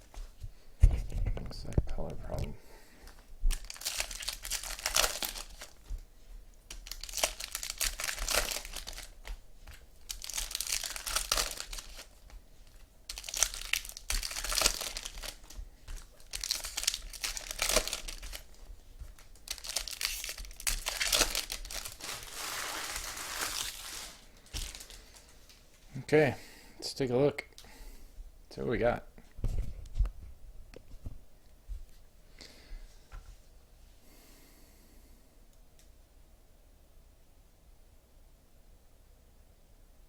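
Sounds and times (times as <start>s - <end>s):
foil wrappers tearing and crinkling: 3.5s - 5.8s, 6.7s - 9.2s, 10.0s - 18.6s, 19.2s - 25.3s.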